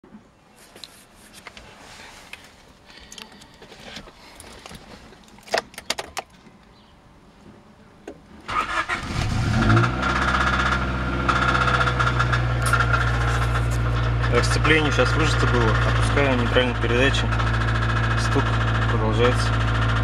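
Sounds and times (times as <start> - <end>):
engine starter cranking: 8.5 - 20.0
engine idling with rapid knock: 9.5 - 20.0.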